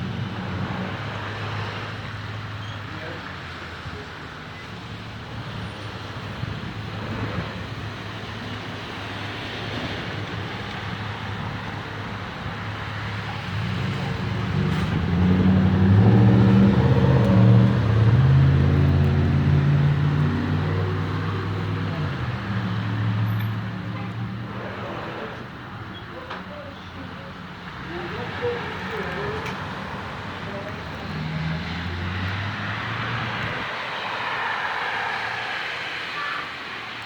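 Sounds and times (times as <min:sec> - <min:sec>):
road noise: 0:00.0 - 0:37.0
vehicle engine passing: 0:13.3 - 0:25.5, 0:27.7 - 0:36.2.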